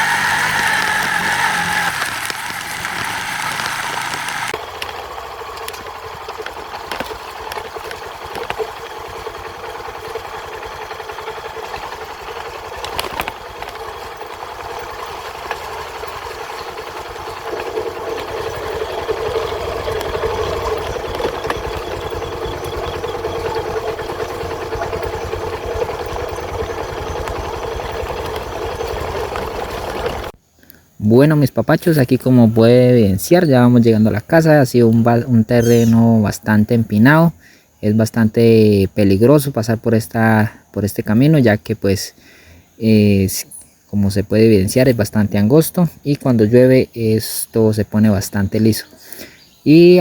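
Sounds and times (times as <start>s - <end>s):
small engine running: 0.0s - 30.4s, 35.6s - 36.0s.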